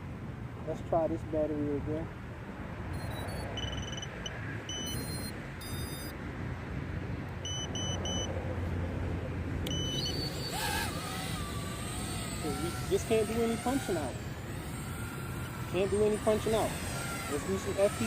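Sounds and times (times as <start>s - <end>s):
multi-tone electronic chirps: 3.0s - 6.1s, 7.4s - 8.3s, 9.7s - 10.5s
short high electronic beeps: 3.0s - 6.1s, 7.4s - 8.3s, 9.7s - 10.6s.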